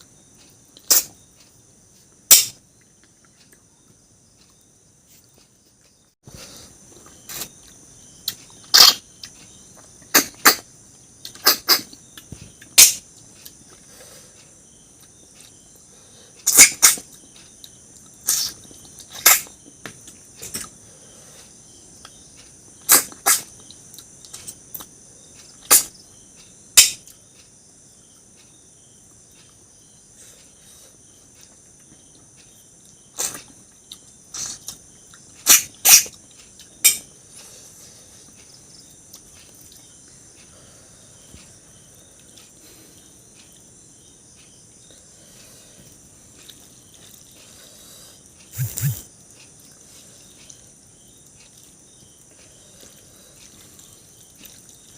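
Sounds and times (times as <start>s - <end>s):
chewing and sucking sounds: 33.2s - 36.7s, 45.8s - 50.6s, 51.2s - 54.9s
high-pitched insect chirring: 46.6s - 54.9s.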